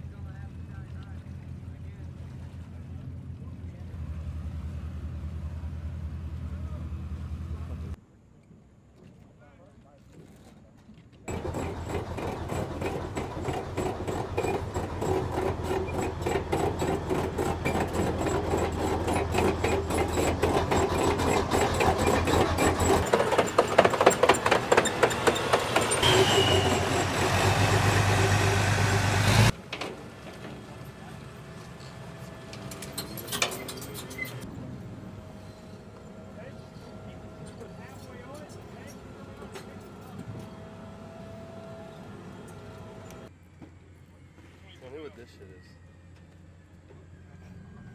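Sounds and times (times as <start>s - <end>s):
tank engine drone: 0.0s - 8.0s, 11.3s - 47.9s
metallic tank track clatter: 11.3s - 27.8s, 32.4s - 34.5s.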